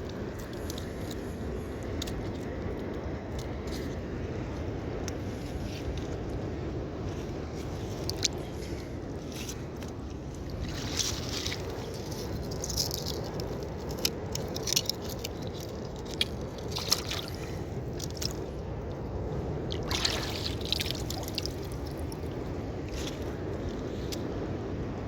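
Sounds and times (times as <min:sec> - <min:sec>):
low background rumble: 0:00.0 - 0:25.0
wet squishing and dripping: 0:14.8 - 0:18.5, 0:19.7 - 0:22.4.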